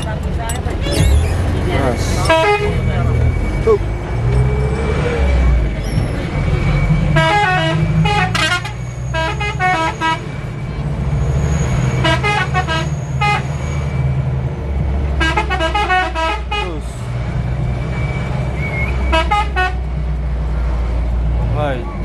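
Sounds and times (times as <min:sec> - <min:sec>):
diesel engine rumble: 0:00.0 - 0:22.0
musical bus horn notes: 0:01.8 - 0:03.2, 0:07.1 - 0:10.3, 0:11.9 - 0:13.6, 0:15.2 - 0:16.8, 0:18.8 - 0:20.0.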